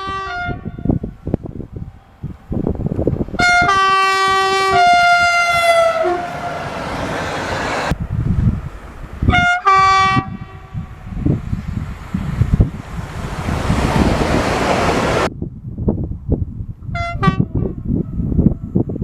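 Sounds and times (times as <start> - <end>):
wind buffeting microphone: 0.0 - 19.0
train rushing past: 0.8 - 15.3
two-note train horn: 3.4 - 7.0, 9.3 - 11.0.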